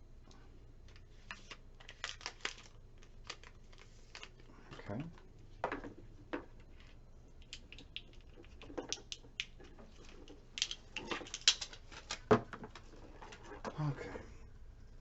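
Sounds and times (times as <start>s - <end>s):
hands handling hardware and packaging: 0.9s - 4.9s, 6.3s - 13.6s.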